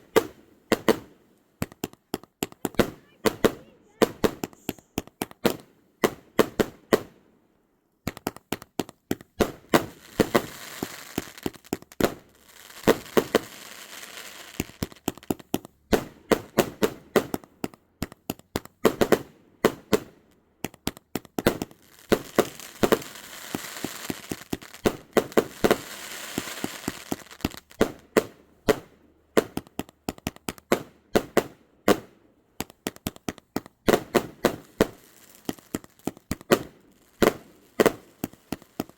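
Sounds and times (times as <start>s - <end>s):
firework crackling: 0.0s - 7.1s, 8.1s - 38.9s
firework bangs: 0.0s - 7.2s, 8.1s - 38.9s.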